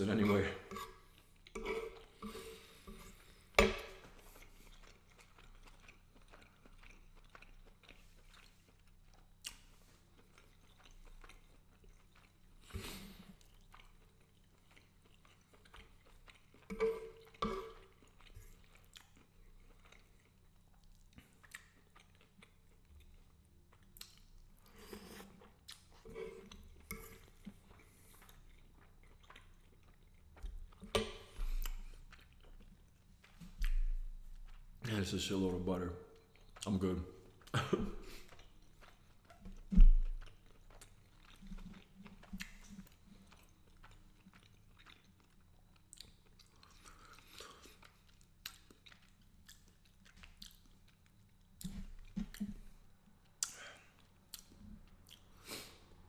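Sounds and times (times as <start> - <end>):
person chewing food: 0.1 - 56.0.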